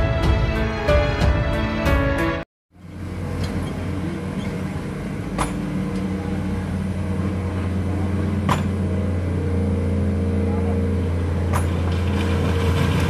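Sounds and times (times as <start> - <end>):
diesel engine droning: 2.2 - 13.0
sharp metallic knocks: 5.3 - 5.8, 8.4 - 9.0.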